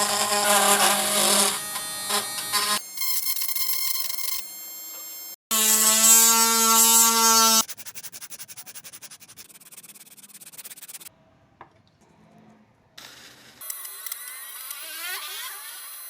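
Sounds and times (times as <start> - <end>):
power tool motor buzzing: 0.0 - 9.2, 13.6 - 16.0
rasping on wood: 6.2 - 11.1.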